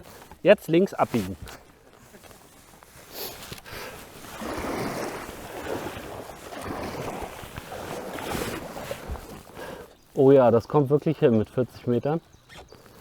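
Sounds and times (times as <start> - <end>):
water splashing around kayak: 0.0 - 10.4.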